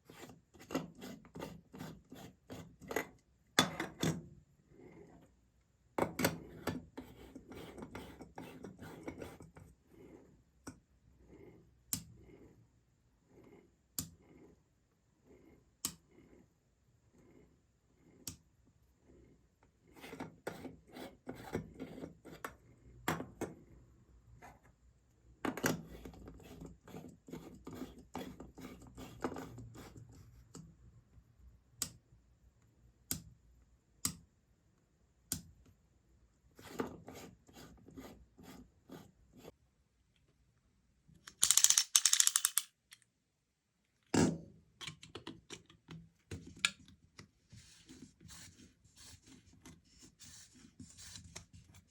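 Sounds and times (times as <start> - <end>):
small hard parts clicking and rattling: 41.2 - 43.0.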